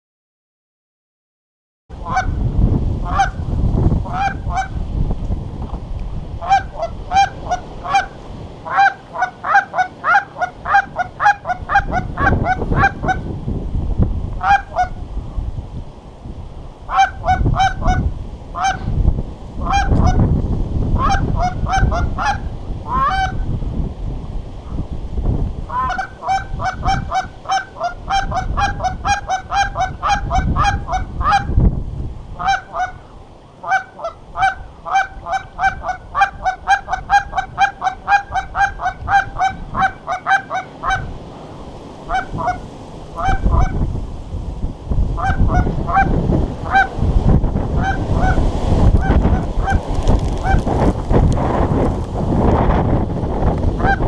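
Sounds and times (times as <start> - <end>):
wind rumble on microphone: 1.9 - 54.0
geese honking: 2.0 - 2.4, 3.0 - 3.4, 4.0 - 4.8, 6.4 - 13.3, 14.4 - 15.0, 16.9 - 18.0, 18.6 - 18.9, 19.6 - 20.2, 21.0 - 23.4, 25.7 - 31.5, 32.4 - 41.1, 42.1 - 43.8, 45.2 - 47.0, 47.7 - 50.8, 53.8 - 54.0.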